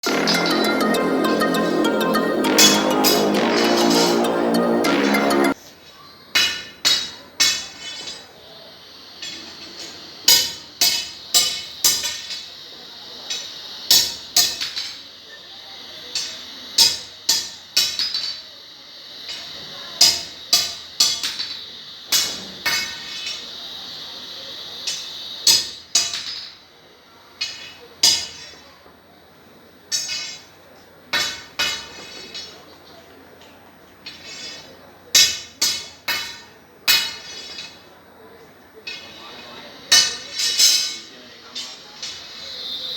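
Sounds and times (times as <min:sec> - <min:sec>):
hammer striking steel: 0:00.0 - 0:05.6, 0:06.4 - 0:08.3, 0:09.2 - 0:12.5, 0:13.3 - 0:15.1, 0:16.1 - 0:18.5, 0:19.3 - 0:23.5, 0:24.8 - 0:26.6, 0:27.4 - 0:28.7, 0:29.9 - 0:32.6, 0:34.0 - 0:37.8, 0:38.8 - 0:39.2, 0:39.9 - 0:42.3
steady hiss: 0:00.0 - 0:42.9.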